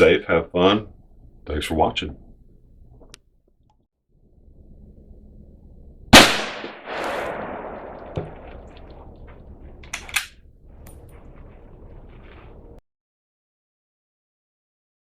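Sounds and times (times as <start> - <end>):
gunshot: 6.2 - 8.9.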